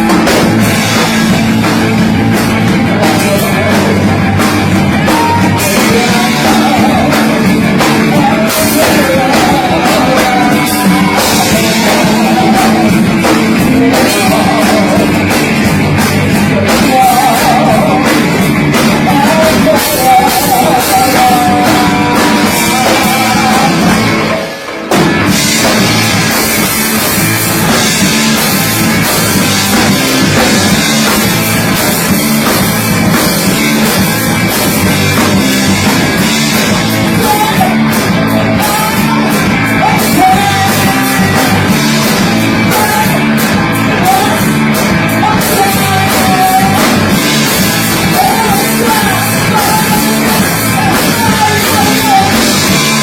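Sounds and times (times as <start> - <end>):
rock band playing distorted: 0.0 - 53.0.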